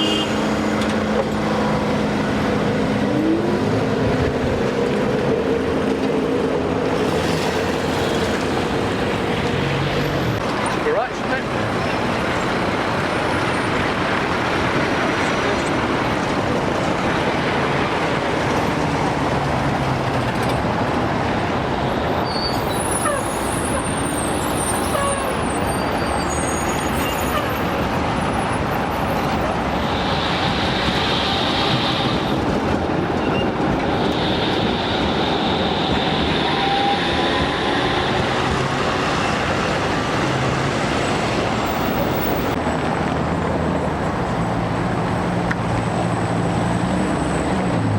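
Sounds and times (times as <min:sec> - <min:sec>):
street traffic passing: 0:00.0 - 0:47.9
high drawn-out squeals: 0:22.2 - 0:32.5, 0:33.2 - 0:39.8.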